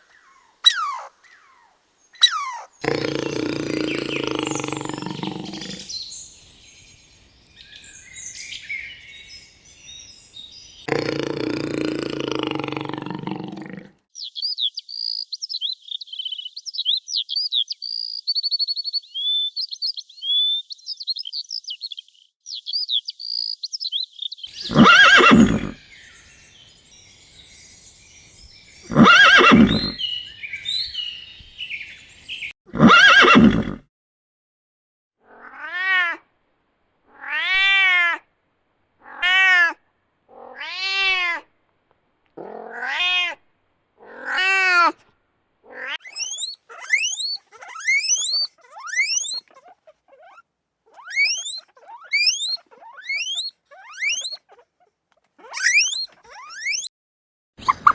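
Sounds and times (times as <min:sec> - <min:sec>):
harsh animal calls: 0:00.0 - 0:06.2, 0:10.8 - 0:13.9, 0:24.5 - 0:33.8, 0:44.0 - 0:45.0, 0:45.6 - 0:54.8, 0:55.4 - 0:56.9
small bird chirping: 0:00.0 - 0:13.1, 0:14.2 - 0:32.6, 0:46.0 - 0:50.4, 0:51.0 - 0:54.6, 0:55.4 - 0:56.9, 0:57.6 - 0:57.9
cat meowing: 0:24.7 - 0:25.8, 0:28.9 - 0:30.0, 0:35.3 - 0:36.2, 0:37.1 - 0:38.2, 0:39.0 - 0:41.5, 0:42.4 - 0:43.4, 0:44.0 - 0:45.0, 0:45.7 - 0:49.4.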